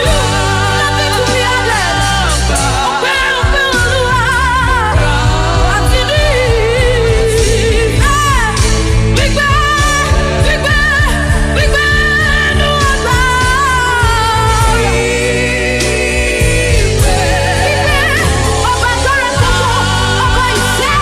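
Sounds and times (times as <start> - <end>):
bass: 0.0 - 21.0
keyboard chords: 0.0 - 21.0
steady drum beat: 0.0 - 21.0
woman singing: 0.0 - 21.0.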